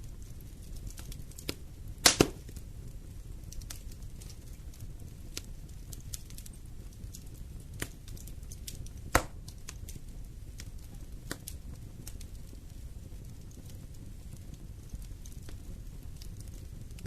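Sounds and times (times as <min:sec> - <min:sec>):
low rumble of flames: 0:00.0 - 0:17.0
wood fire crackling: 0:00.0 - 0:17.0
loud pop of fire: 0:00.9 - 0:02.6, 0:08.6 - 0:10.0.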